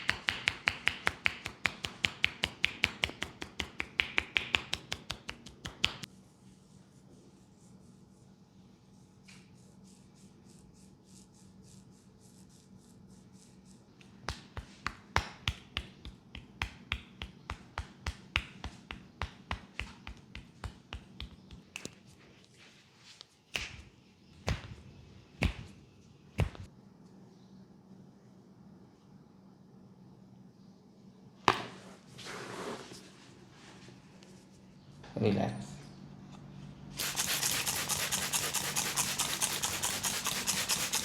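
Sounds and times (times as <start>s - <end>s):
hands snapping and slapping: 0.0s - 6.1s, 14.0s - 22.0s, 23.5s - 24.8s, 25.4s - 25.8s, 26.4s - 26.7s.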